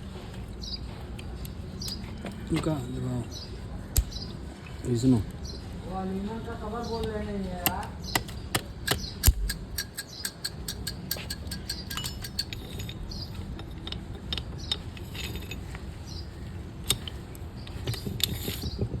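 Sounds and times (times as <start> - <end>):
metal parts and tools clinking: 8.2 - 18.9.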